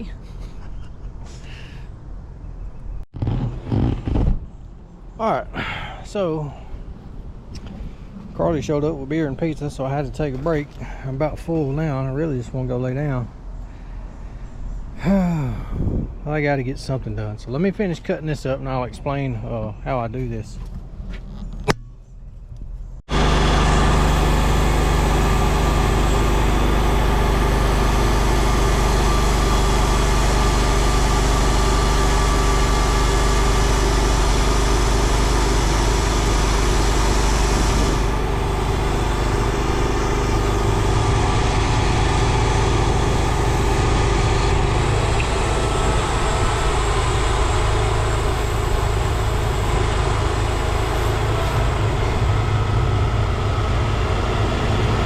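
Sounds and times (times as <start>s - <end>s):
band blade cutting wood: 3.2s - 4.4s, 23.2s - 49.9s
sawmill engine droning: 23.1s - 55.0s.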